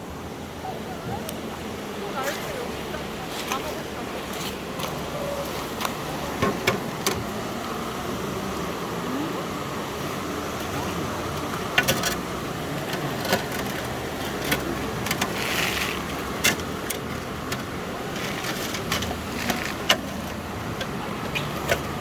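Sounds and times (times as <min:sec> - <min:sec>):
stream water running: 0:00.0 - 0:22.0.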